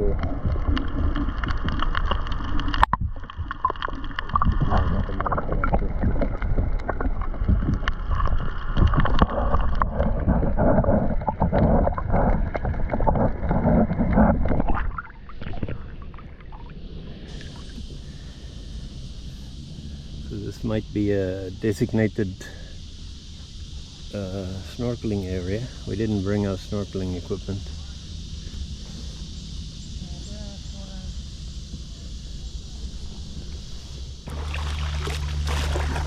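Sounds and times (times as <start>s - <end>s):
paddle splashing water: 0.0s - 18.2s, 33.6s - 36.0s.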